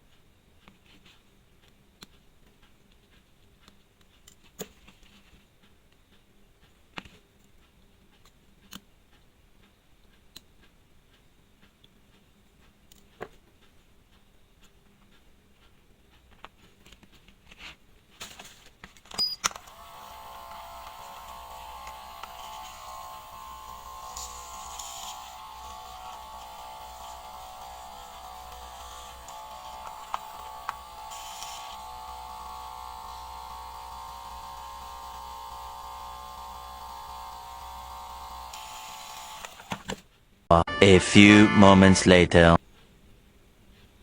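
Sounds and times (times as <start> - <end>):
small tools clicking on watch: 0.6 - 17.3
steady buzzing hum: 19.6 - 39.6.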